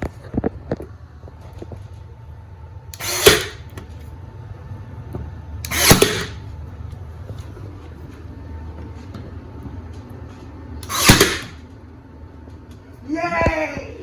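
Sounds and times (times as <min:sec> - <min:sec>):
nail gun firing: 0:03.0 - 0:03.7, 0:05.7 - 0:06.4, 0:10.8 - 0:11.6.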